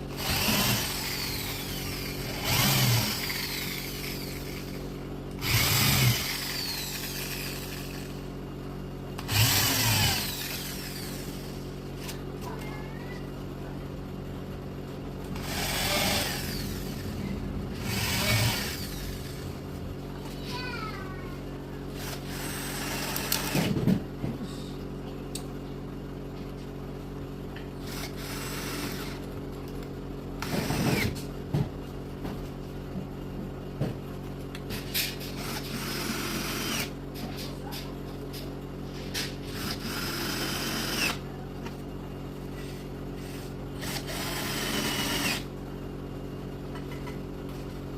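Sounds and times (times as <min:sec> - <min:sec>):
steady background hum: 0:00.0 - 0:47.9
power drill driving screws: 0:00.2 - 0:04.8, 0:05.4 - 0:08.2, 0:09.2 - 0:11.5, 0:15.4 - 0:17.0, 0:17.8 - 0:19.4, 0:22.0 - 0:23.8, 0:27.8 - 0:29.2, 0:34.7 - 0:36.9, 0:39.1 - 0:41.2, 0:43.3 - 0:45.5.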